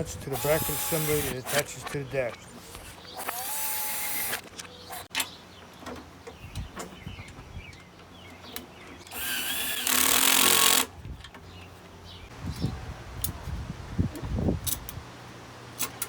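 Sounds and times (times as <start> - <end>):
power drill motor whine: 0.3 - 1.7, 3.2 - 4.4, 9.1 - 10.9.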